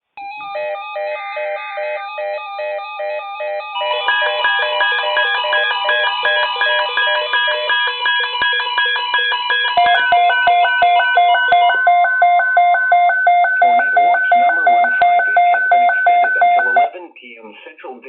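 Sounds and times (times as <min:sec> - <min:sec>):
electronic alert beeps: 0:03.8 - 0:16.9.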